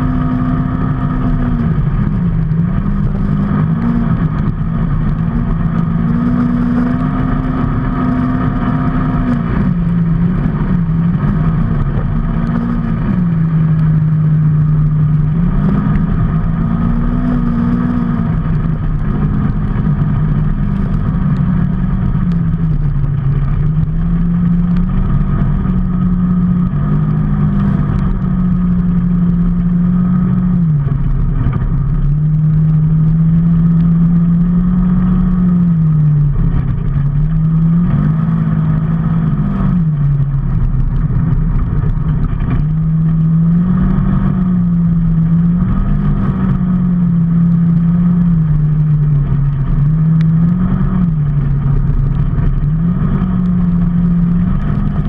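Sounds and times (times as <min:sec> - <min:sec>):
low road rumble: 0:00.0 - 0:55.0
vehicle engine running: 0:00.0 - 0:55.0.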